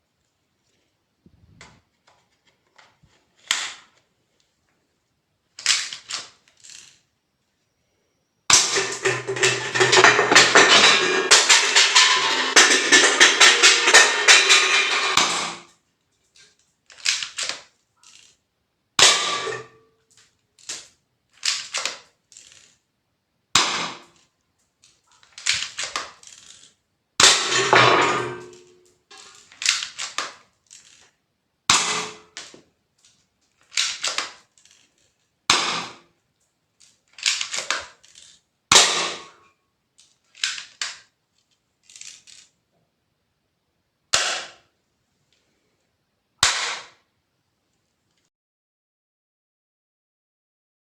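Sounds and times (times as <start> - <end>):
airsoft pistol shots: 19.0 - 19.6, 23.6 - 24.0, 31.7 - 32.2, 46.4 - 47.0.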